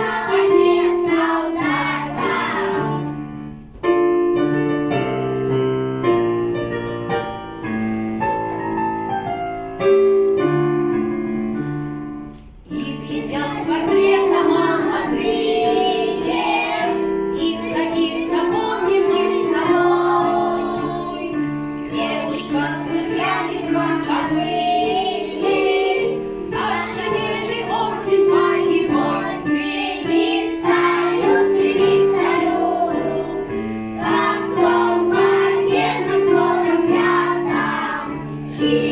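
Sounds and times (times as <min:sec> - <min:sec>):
children singing: 0:00.0 - 0:03.2, 0:12.7 - 0:38.9
keyboard accompaniment: 0:00.0 - 0:38.9.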